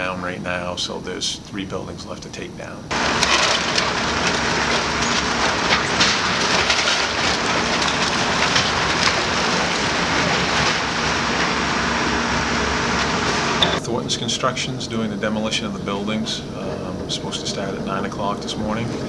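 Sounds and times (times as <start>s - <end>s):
debris crackling and crunching: 2.9s - 13.8s
demolition machine engine hum: 2.9s - 19.0s.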